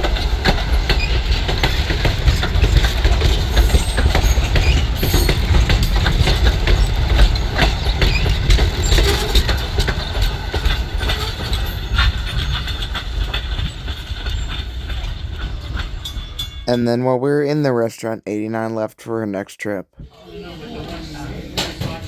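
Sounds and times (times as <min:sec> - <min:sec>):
wheels clicking over rail joints: 0:00.0 - 0:16.7
train rumbling past: 0:00.0 - 0:16.8, 0:20.1 - 0:22.0.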